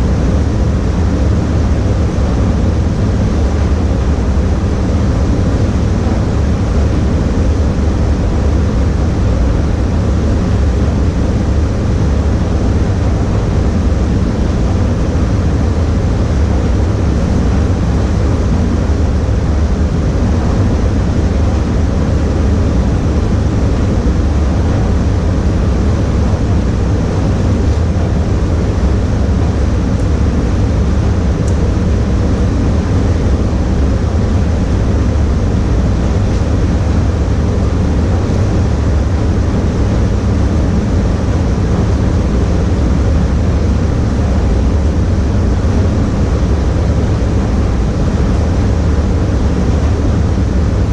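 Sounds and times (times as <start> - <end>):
spray booth fan rushing air: 0.0 - 50.9.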